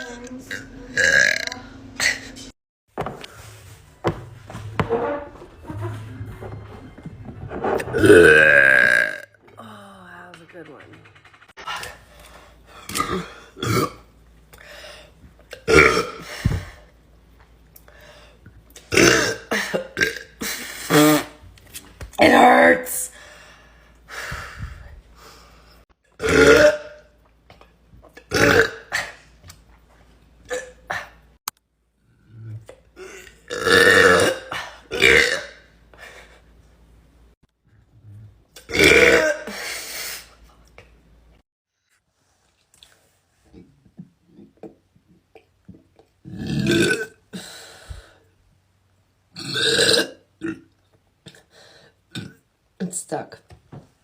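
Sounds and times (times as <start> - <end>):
woman burping: 0.5 - 2.4, 8.0 - 9.7, 12.8 - 14.1, 15.5 - 16.3, 18.8 - 21.4, 26.2 - 27.1, 28.2 - 29.2, 32.9 - 35.7, 38.6 - 39.6, 46.2 - 47.3, 49.4 - 50.7.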